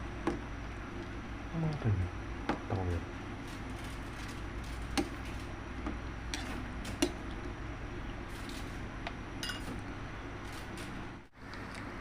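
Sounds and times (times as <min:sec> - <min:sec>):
steady low hum: 0:00.0 - 0:12.0
utensils and dishes clinking: 0:09.4 - 0:09.8.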